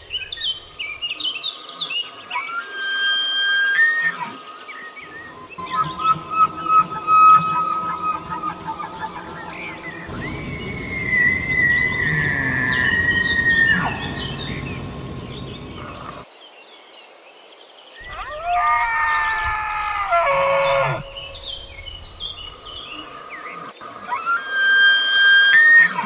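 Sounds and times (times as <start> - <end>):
faint high chirps: 5.2 - 16.2
stag bugling: 5.3 - 16.2, 18.0 - 23.2.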